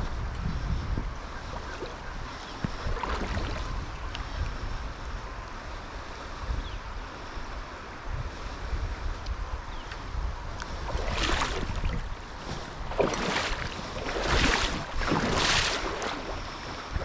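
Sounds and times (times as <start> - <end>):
wind buffeting microphone: 0.0 - 17.0
river water rushing: 10.8 - 17.0.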